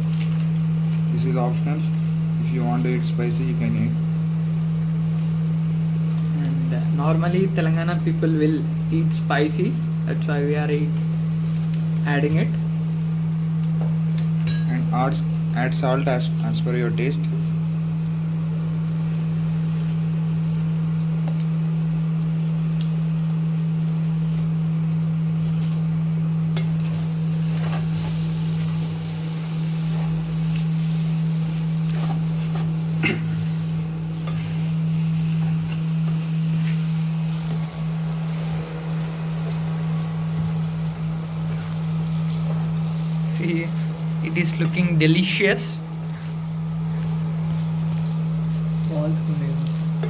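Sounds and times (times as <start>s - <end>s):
spices sizzling in a pan: 0.0s - 50.0s
steady low hum: 0.0s - 50.0s.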